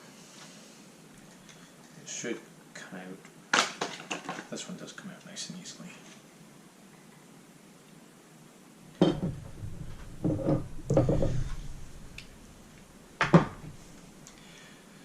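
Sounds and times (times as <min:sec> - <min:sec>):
rifle parts knocking on wooden stock: 0:09.0 - 0:14.2.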